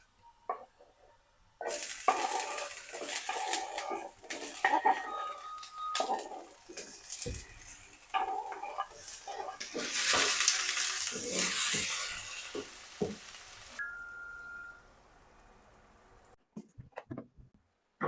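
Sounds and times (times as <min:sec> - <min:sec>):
utensil scraping a pot: 0:01.6 - 0:13.1
butter sizzling in a pot: 0:01.6 - 0:14.4.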